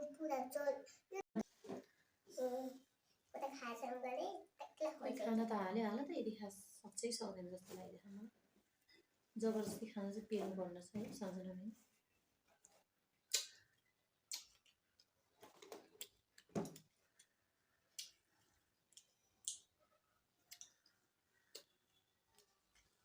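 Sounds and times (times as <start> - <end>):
soft eating clicks and smacks: 12.4 - 23.0.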